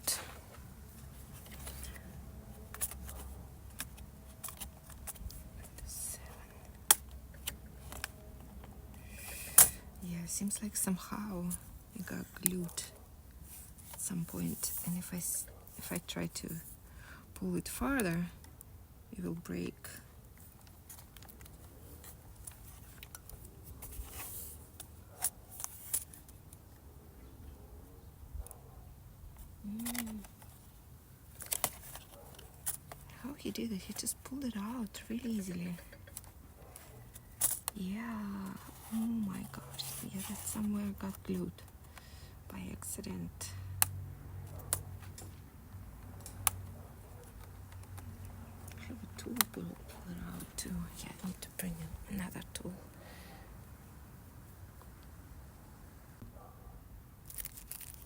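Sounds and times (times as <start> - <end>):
low steady hum: 0.0 - 58.0
hands clicking and scraping laptop: 0.2 - 9.9, 20.3 - 26.6.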